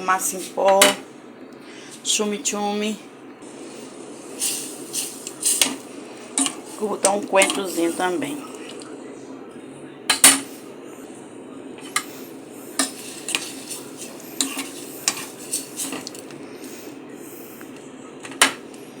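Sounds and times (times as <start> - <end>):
spoon stirring beans in pot: 3.7 - 8.9, 11.8 - 16.8.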